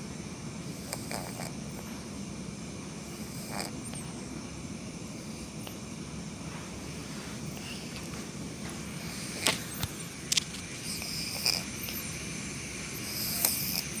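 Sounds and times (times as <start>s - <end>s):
cat snoring: 0.6s - 2.0s, 3.0s - 4.2s, 8.9s - 9.9s, 10.7s - 12.1s, 12.9s - 14.0s.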